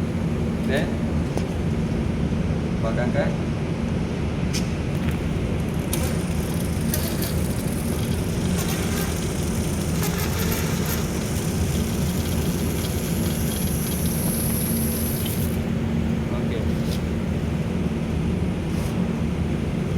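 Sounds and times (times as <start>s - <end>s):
thin high whine: 5.6s - 15.7s
electric motor droning: 5.7s - 15.5s.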